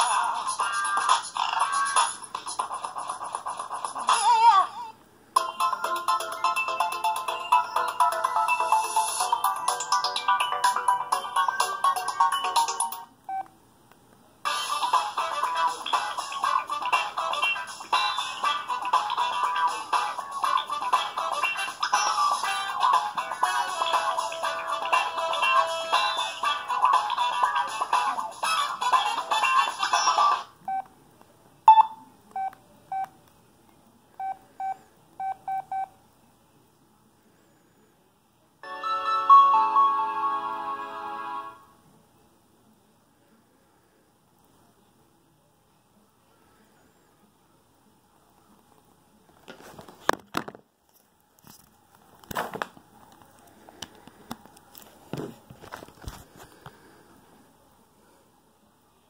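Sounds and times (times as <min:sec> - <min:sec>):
phone ringtone: 0:05.4 - 0:13.4, 0:38.6 - 0:41.6
keypad key-press beeps: 0:31.7 - 0:33.1.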